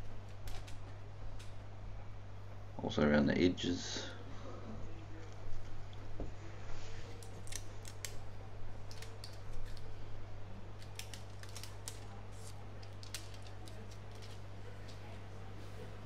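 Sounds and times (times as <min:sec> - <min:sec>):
low electrical hum: 0:00.0 - 0:16.0
plastic film peeling: 0:07.1 - 0:10.0, 0:10.7 - 0:15.1.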